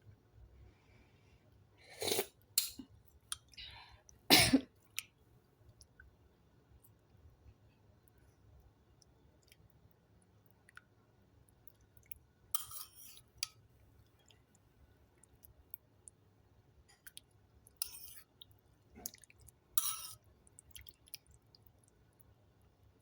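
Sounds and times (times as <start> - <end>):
chewing sounds: 16.9 - 22.3.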